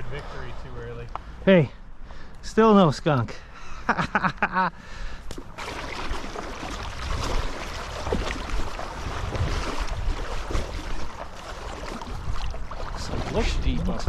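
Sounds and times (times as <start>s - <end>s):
stream water flowing: 5.1s - 14.0s
wind buffeting microphone: 5.6s - 14.0s.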